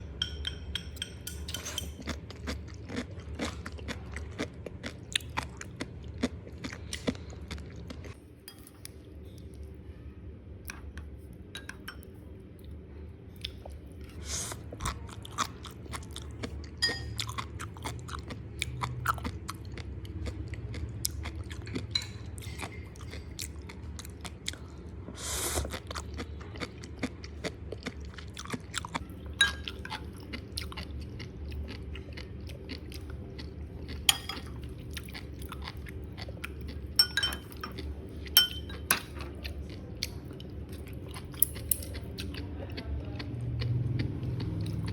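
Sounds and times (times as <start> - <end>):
crunchy chewing: 2.0 - 8.2.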